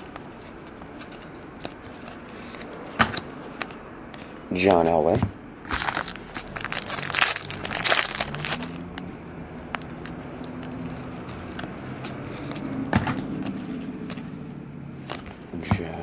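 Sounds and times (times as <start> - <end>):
card pack wrapper crinkling: 5.7 - 14.3.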